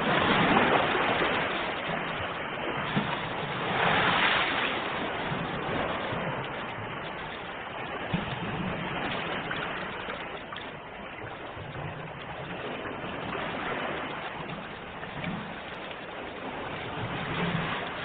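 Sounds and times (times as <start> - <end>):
sea waves washing: 0.0 - 18.0.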